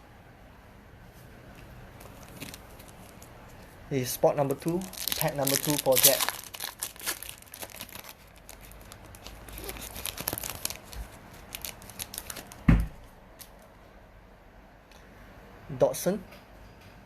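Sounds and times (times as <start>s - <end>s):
foil wrapper tearing and crinkling: 2.0s - 3.3s, 4.6s - 12.7s.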